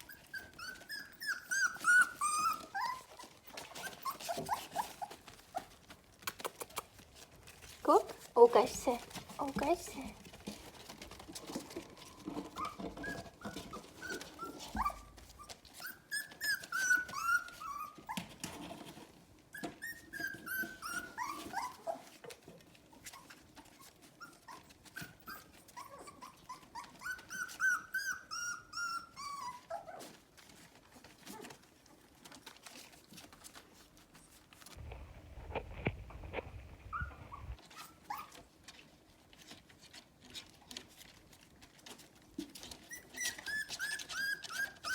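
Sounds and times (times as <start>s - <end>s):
puppies whimpering: 0.0s - 5.9s, 10.6s - 18.6s, 19.6s - 22.4s, 23.0s - 33.6s, 36.9s - 38.6s, 41.7s - 44.9s
small clicks and smacks: 3.5s - 8.2s.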